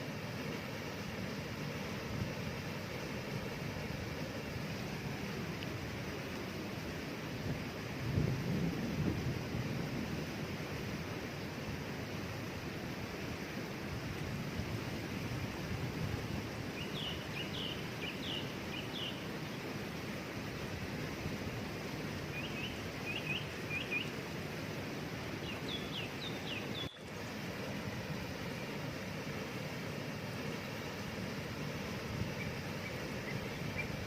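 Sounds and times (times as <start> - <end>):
waterfall rushing: 0.0 - 8.1, 10.2 - 34.0
bird chirping: 16.8 - 19.2, 22.3 - 24.1, 25.4 - 27.0.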